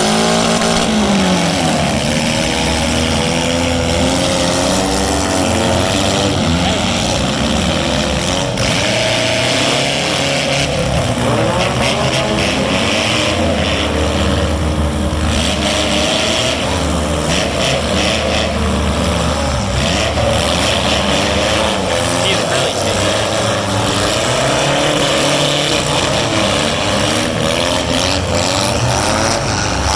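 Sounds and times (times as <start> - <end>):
car engines revving: 0.0 - 29.9.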